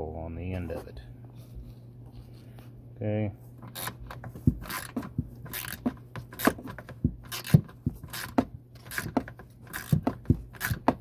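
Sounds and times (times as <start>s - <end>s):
ratchet wrench clicking: 3.7s - 4.0s, 4.6s - 6.6s, 7.3s - 10.0s, 10.6s - 10.9s.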